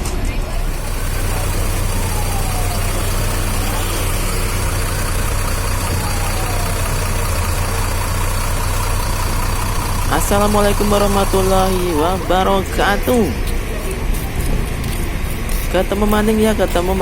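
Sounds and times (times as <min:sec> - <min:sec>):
bus engine idling: 0:00.0 - 0:17.0.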